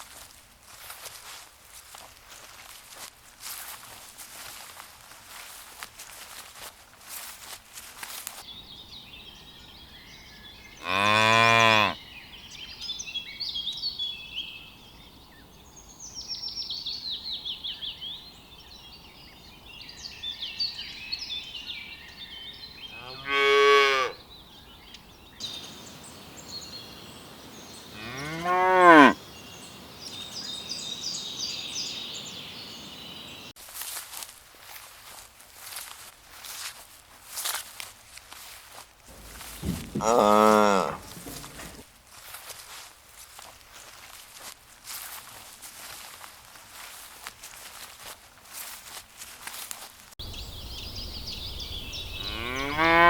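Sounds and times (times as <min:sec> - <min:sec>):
birds chirping: 0:08.4 - 0:33.5, 0:39.1 - 0:41.8, 0:50.2 - 0:53.0
cow mooing: 0:10.8 - 0:12.0, 0:23.0 - 0:24.2, 0:28.0 - 0:29.2, 0:39.2 - 0:41.8, 0:52.2 - 0:53.0.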